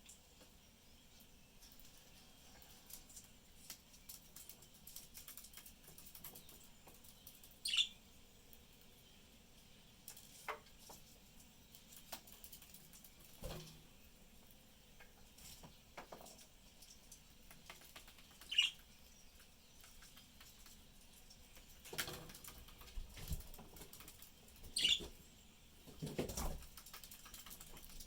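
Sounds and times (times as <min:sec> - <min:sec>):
light clicking and scratching: 0:01.6 - 0:07.6, 0:10.0 - 0:13.8, 0:14.4 - 0:28.0
budgies chirping: 0:07.6 - 0:08.0, 0:18.4 - 0:19.4, 0:24.6 - 0:25.1.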